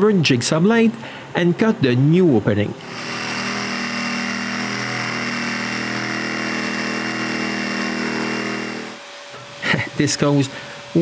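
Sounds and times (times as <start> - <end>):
jigsaw cutting tile: 2.8 - 9.0.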